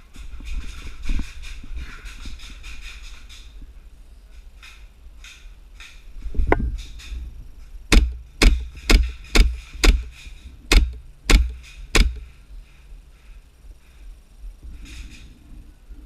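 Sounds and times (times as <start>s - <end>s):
airsoft gun shots: 7.9s - 12.3s
dull thump: 7.9s - 12.3s.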